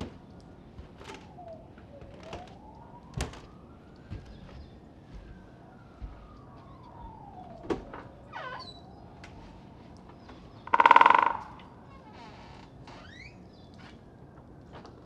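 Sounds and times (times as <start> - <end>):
faint distant siren: 0.0 - 15.0
sharp knocks: 10.7 - 11.6.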